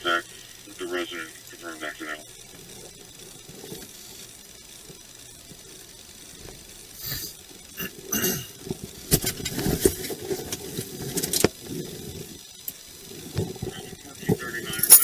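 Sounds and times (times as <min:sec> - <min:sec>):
rustling and clatter: 0:02.4 - 0:05.7, 0:06.3 - 0:15.0.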